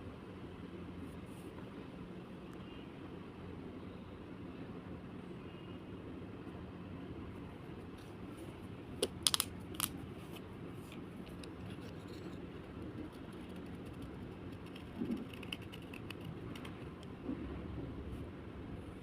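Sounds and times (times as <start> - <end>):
steady low rumble: 7.1 - 19.0
slate pieces clicking: 9.0 - 9.9.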